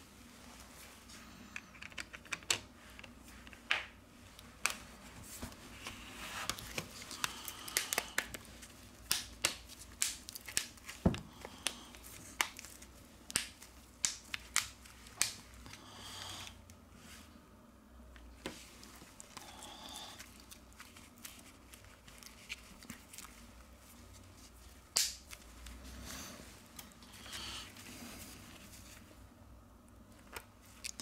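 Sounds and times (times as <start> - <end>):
soft scratchy rustle: 18.5 - 29.2.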